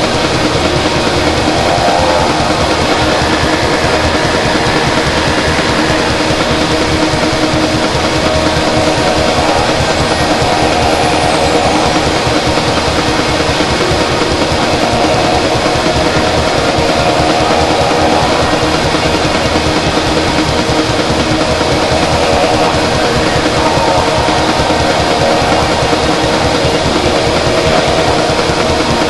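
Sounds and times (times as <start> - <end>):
droning noise music: 0.0 - 29.0.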